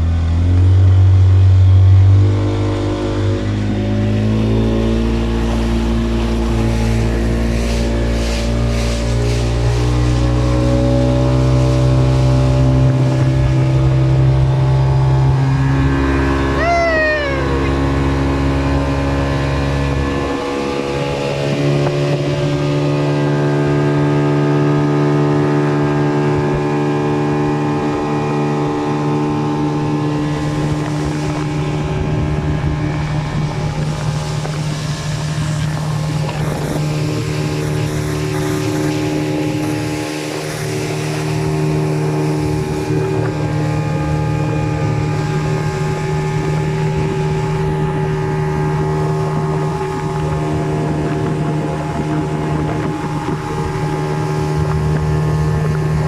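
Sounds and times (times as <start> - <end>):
motorboat engine running: 0.0 - 56.0
brief falling tone: 16.5 - 18.0.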